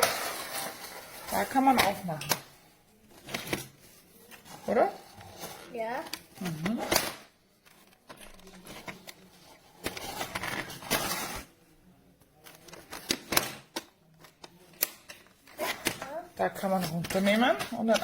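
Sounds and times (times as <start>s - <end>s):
plastic toy clicking and clattering: 12.4s - 18.0s.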